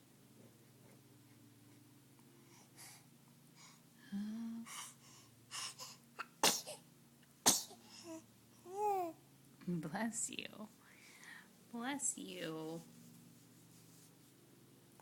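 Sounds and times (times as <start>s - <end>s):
baby sneezing: 6.2s - 6.8s, 7.4s - 7.8s.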